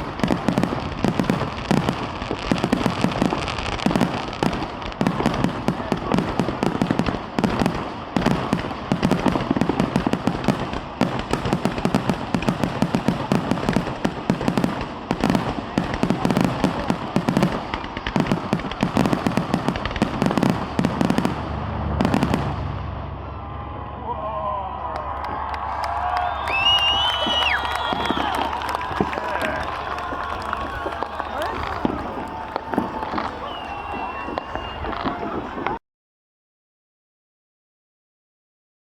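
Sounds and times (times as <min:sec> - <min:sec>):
firework explosions: 0:00.0 - 0:35.8.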